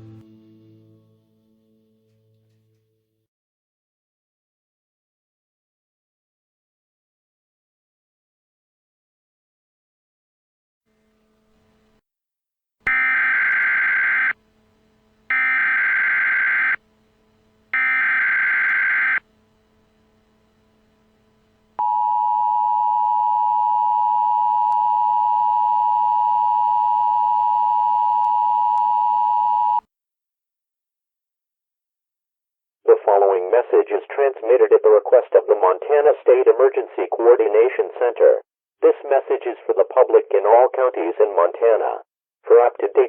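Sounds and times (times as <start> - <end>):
warbling digital data tones: 12.9 - 14.3, 15.3 - 16.8, 17.8 - 19.2
two-tone attention signal: 12.9 - 14.4, 15.3 - 16.8, 17.8 - 19.2.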